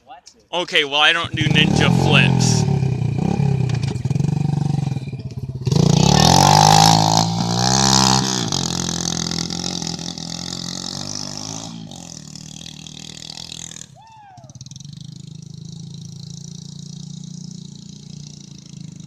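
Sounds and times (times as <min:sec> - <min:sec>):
vehicle engine revving: 0:01.2 - 0:14.0.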